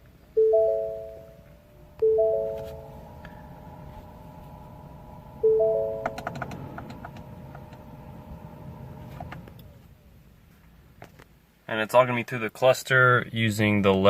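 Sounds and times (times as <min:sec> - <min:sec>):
low steady hum: 0:00.0 - 0:11.9
car chime bell-like tone: 0:00.4 - 0:06.8.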